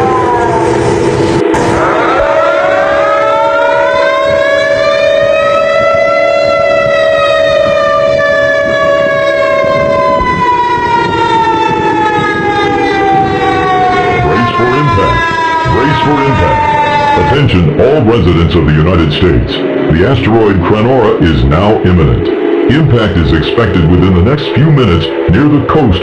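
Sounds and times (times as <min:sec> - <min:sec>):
siren winding up and down: 0:00.0 - 0:22.4
steady tone: 0:00.0 - 0:26.0.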